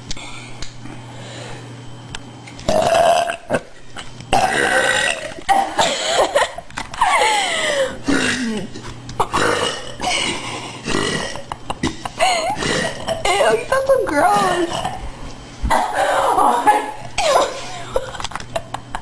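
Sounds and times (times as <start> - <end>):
woman belching loudly: 2.7 - 3.7, 4.3 - 5.8, 8.1 - 10.0, 10.8 - 11.5, 12.5 - 13.5, 14.3 - 15.0.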